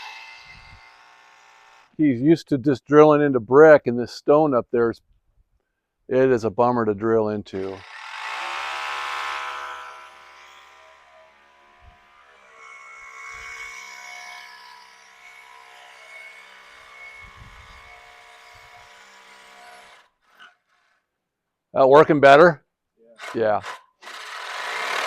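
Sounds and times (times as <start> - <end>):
hammer drill boring into stone: 0.0 - 2.0, 7.6 - 20.5, 23.2 - 25.0.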